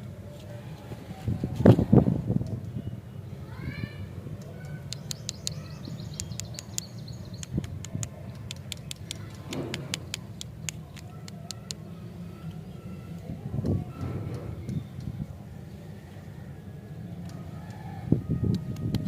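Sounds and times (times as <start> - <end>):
rapid sharp clicks: 4.6 - 11.8.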